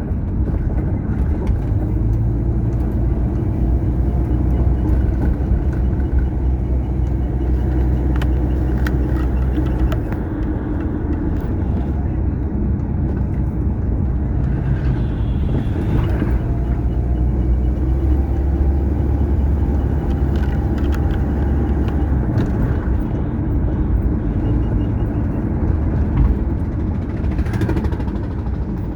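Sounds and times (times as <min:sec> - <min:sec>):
car road and engine rumble: 0:00.0 - 0:28.9.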